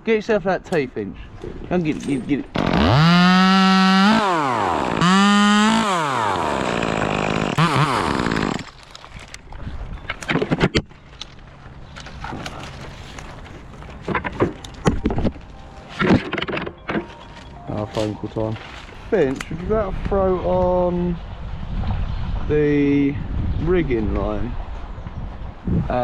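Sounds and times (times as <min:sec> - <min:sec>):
chainsaw running at full revs: 0:02.6 - 0:08.8
knocks and rustles: 0:10.0 - 0:17.6.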